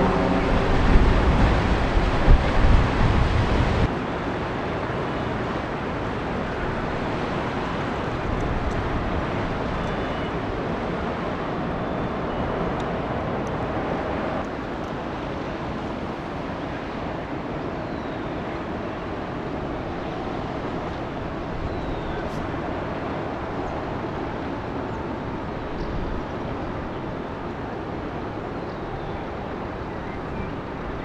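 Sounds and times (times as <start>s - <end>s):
wind on microphone: 0.0s - 4.0s
ship rumble and rushing: 0.0s - 31.0s.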